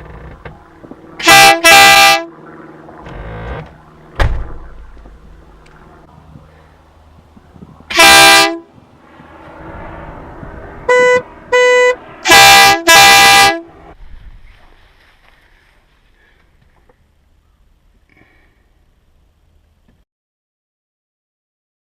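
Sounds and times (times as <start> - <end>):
thin car horn toots: 1.2 - 2.3, 7.9 - 8.7, 10.9 - 13.7
air horn blasts: 1.2 - 2.4, 7.9 - 8.8, 10.8 - 14.0.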